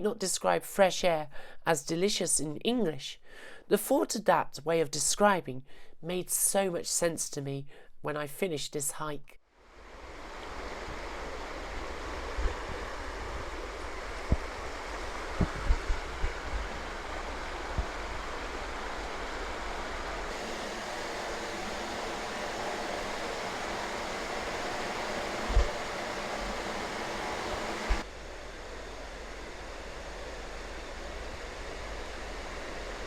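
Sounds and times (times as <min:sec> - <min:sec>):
running water rushing: 0:09.7 - 0:33.0
soft low thumps: 0:15.3 - 0:16.8.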